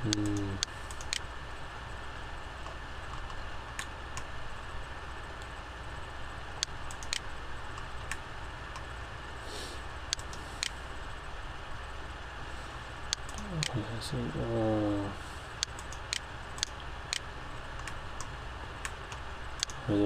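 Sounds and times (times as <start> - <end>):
low hum and hiss: 0.0 - 20.0
mouse and keyboard clicks: 0.1 - 1.3, 6.6 - 8.9, 15.6 - 19.8.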